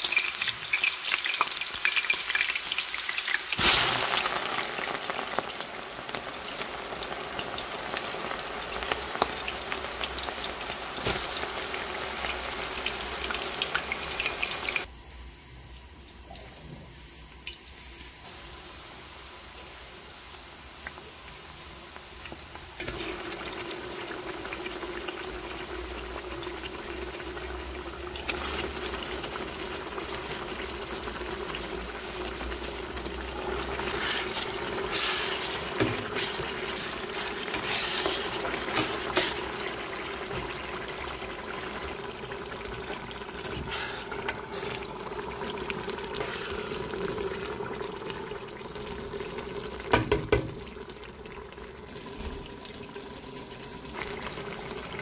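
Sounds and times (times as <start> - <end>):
liquid bubbling in a pot: 22.7 - 55.0.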